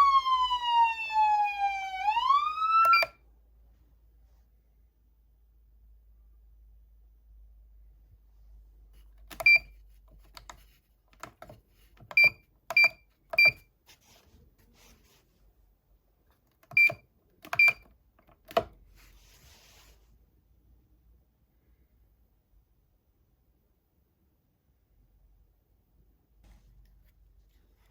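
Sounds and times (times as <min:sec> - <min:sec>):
button clicks with high beeps: 0:02.8 - 0:03.2, 0:09.4 - 0:09.7, 0:12.1 - 0:13.6, 0:16.7 - 0:17.9.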